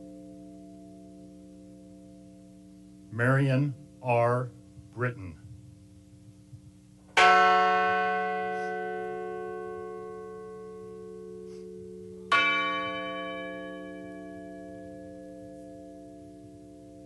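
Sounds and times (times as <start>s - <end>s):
large bell tolling: 7.1s - 17.0s.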